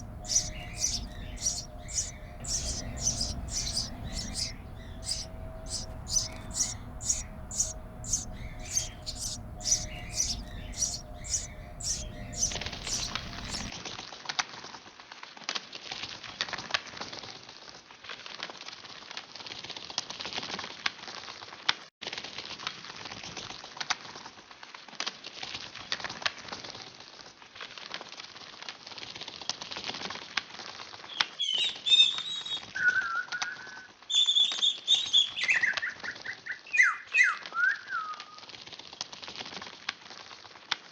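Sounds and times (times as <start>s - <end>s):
high bird chirp: 0.0s - 13.7s
whistled bird calls: 0.0s - 13.7s.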